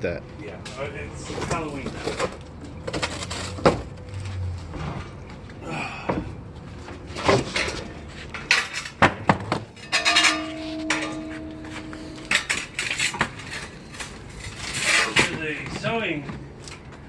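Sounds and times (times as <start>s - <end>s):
pitched ringing squeal: 9.8s - 13.1s.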